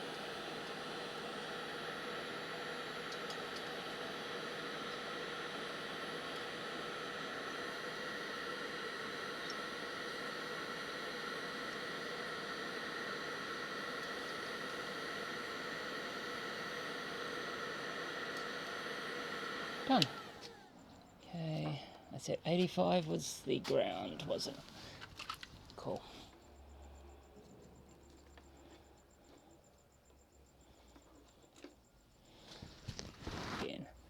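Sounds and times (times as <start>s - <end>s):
heat gun blowing: 0.0s - 20.6s, 32.6s - 33.7s.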